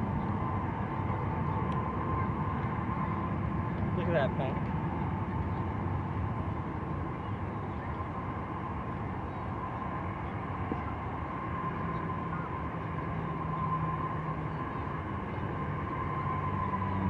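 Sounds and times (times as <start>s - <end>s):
distant jet engines rumbling: 0.0s - 17.0s
faint jet engine whine: 0.0s - 17.0s.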